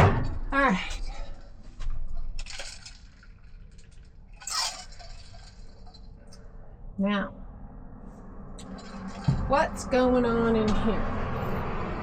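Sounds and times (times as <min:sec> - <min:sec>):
small hard objects clinking: 0:02.4 - 0:06.1.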